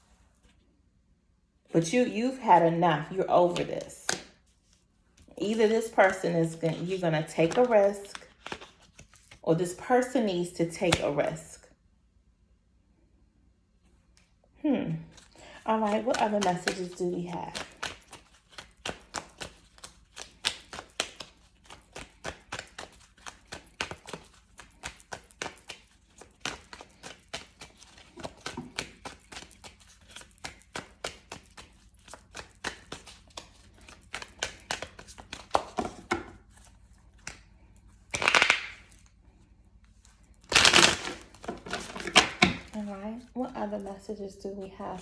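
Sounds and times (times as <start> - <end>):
card rustles: 1.8 - 11.4, 15.1 - 45.0
cards being shuffled: 2.3 - 9.8, 15.1 - 43.0.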